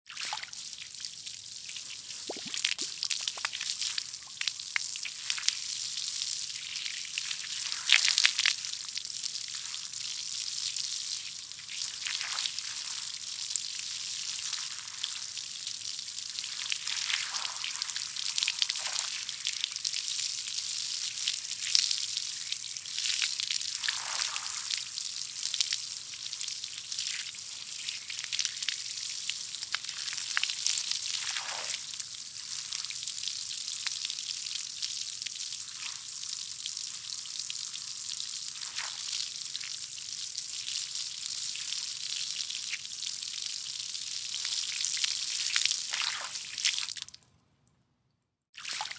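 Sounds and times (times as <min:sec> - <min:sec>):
garden hose spraying water: 0:00.1 - 0:05.7, 0:23.8 - 0:25.0.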